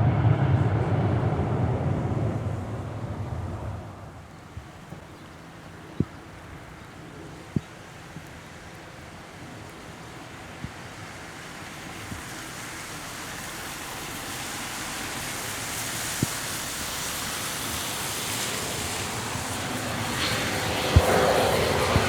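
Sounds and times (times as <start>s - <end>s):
jet engines rushing: 0.0s - 5.8s, 12.9s - 22.0s.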